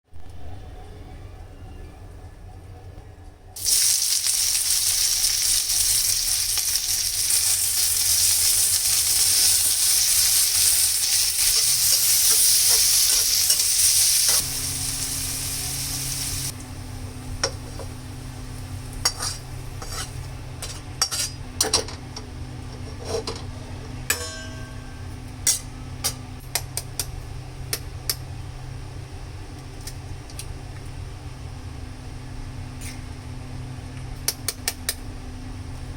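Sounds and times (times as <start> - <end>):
steady low hum: 0.2 - 35.9
food sizzling in frying pan: 3.6 - 20.3
utensil scraping pan: 19.0 - 21.4.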